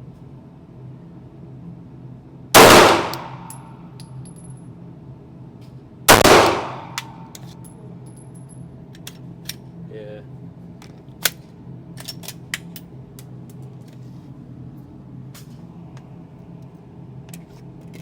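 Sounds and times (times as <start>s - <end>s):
pistol shots echoing: 2.6s - 3.5s, 6.1s - 7.2s.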